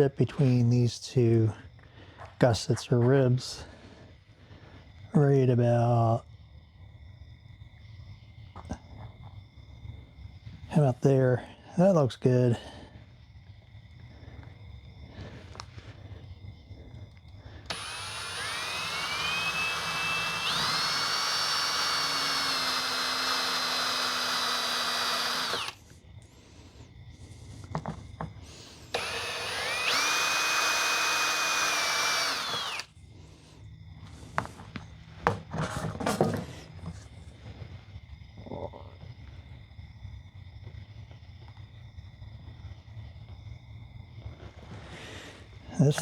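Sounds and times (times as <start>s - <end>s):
power drill cutting: 17.7s - 25.8s, 28.9s - 32.9s.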